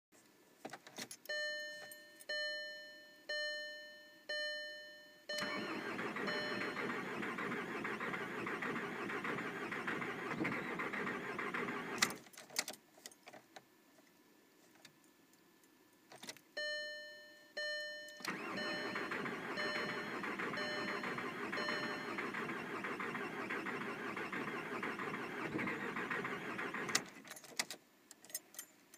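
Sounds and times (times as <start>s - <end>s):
dashboard warning chime: 1.3s - 7.6s, 16.6s - 24.6s
starter motor cranking engine: 5.4s - 12.2s, 18.3s - 27.2s.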